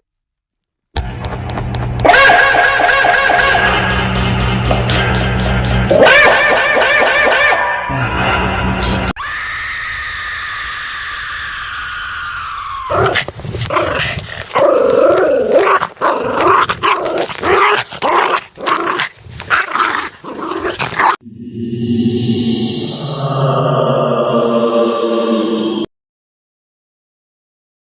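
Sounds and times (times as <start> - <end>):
gong: 2.0 - 6.0
chanting drone: 2.2 - 9.1, 21.2 - 25.9
dogs snarling and barking: 5.9 - 7.7, 12.8 - 21.2
wailing tone sinking in pitch: 21.2 - 25.9.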